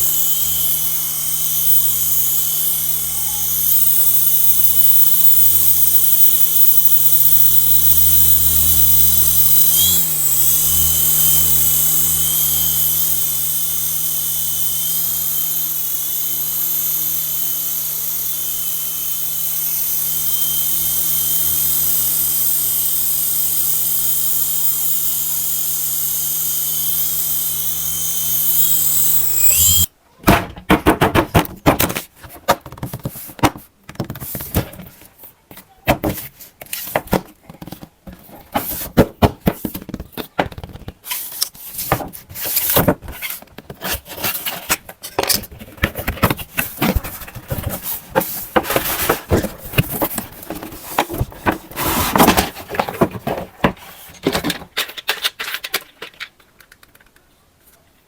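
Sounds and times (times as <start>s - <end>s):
toy helicopter motor whirring: 0.0s - 29.9s, 40.6s - 56.3s.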